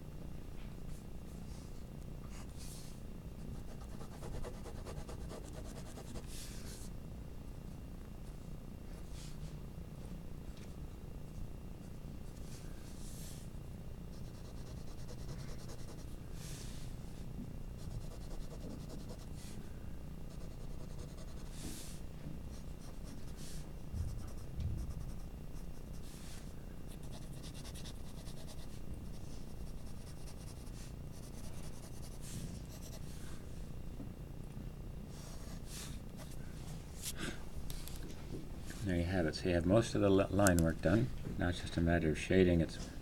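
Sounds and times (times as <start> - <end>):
low steady hum: 0.0 - 43.0
pencil scratching on paper: 3.6 - 6.4, 14.1 - 16.1, 17.8 - 19.3, 20.3 - 21.9, 24.2 - 33.1.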